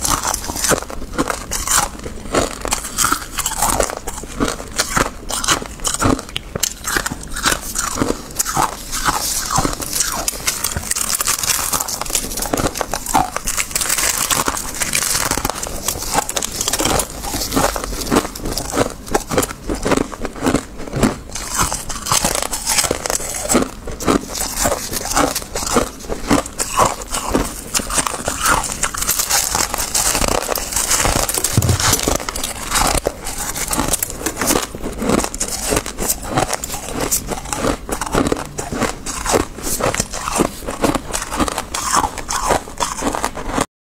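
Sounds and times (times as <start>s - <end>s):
frost being chewed crunching: 0.0s - 43.6s.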